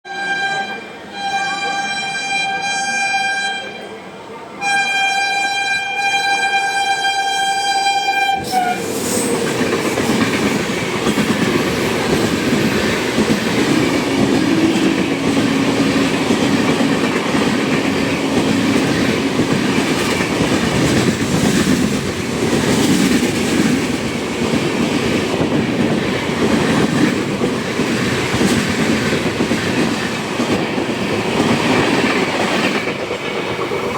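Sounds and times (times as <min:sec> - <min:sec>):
locomotive horn blasts: 0:00.1 - 0:03.9, 0:04.6 - 0:08.8
train wheels clattering on rails: 0:08.4 - 0:33.9.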